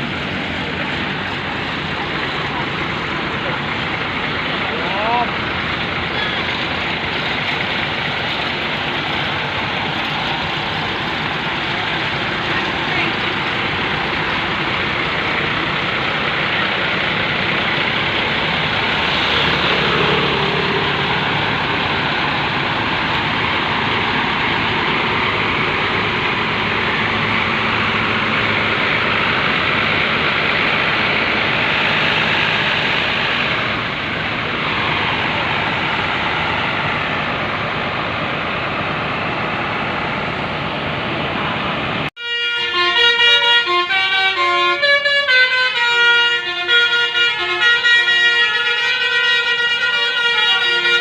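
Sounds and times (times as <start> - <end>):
vehicle passing by: 0.0 - 42.0
heavy road traffic: 0.0 - 51.0.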